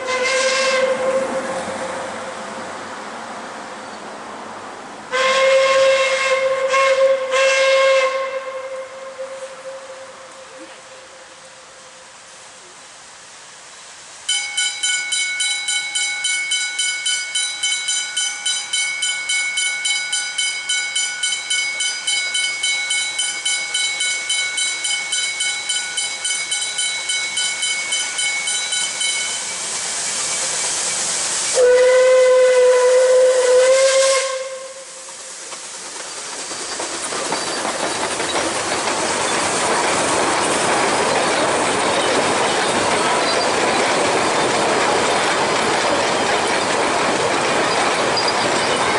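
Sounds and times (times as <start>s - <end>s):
steam whistle blowing: 0.0s - 2.2s, 5.1s - 12.1s, 31.3s - 35.1s
steam train rushing: 0.0s - 48.9s
pulsing high ringing tone: 14.3s - 30.0s.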